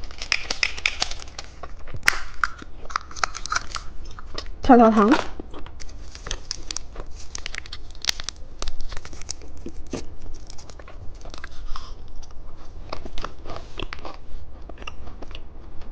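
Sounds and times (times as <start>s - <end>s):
plastic wrapper crinkling and tearing: 0.0s - 4.5s, 5.1s - 12.4s.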